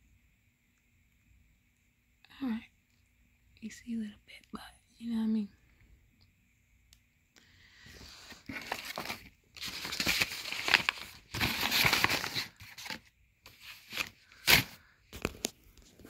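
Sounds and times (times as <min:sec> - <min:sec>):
crinkling and rustling: 0:07.8 - 0:16.0.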